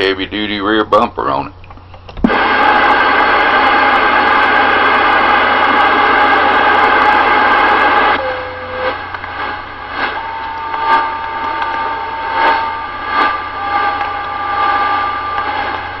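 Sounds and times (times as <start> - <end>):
radio receiver hiss: 2.2 - 16.0
radio noise rush: 2.3 - 16.0
soft pulses: 8.2 - 16.0.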